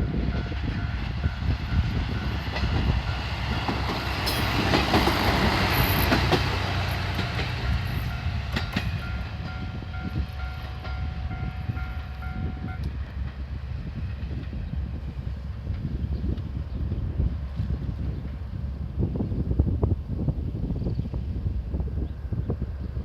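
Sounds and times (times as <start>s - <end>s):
diesel railcar passing: 0.0s - 23.0s
train wheel clicks: 1.8s - 13.4s
level-crossing alarm dinging: 7.4s - 12.8s.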